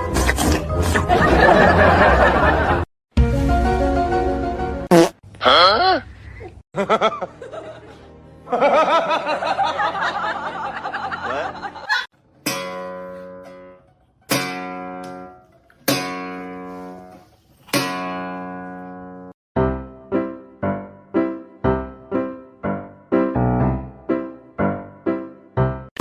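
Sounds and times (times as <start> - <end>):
guitar music: 12.2 - 20.4
plucked guitar chords ringing: 12.4 - 17.0, 17.7 - 19.3.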